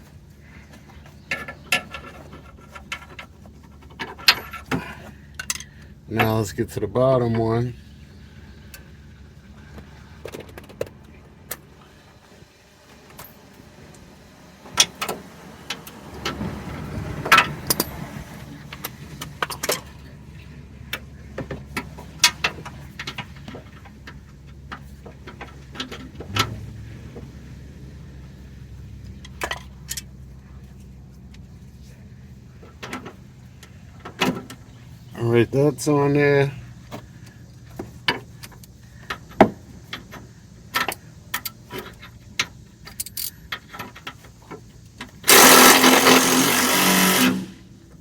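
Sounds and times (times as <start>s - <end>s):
metal tools clinking: 1.2s - 6.6s, 38.0s - 44.3s.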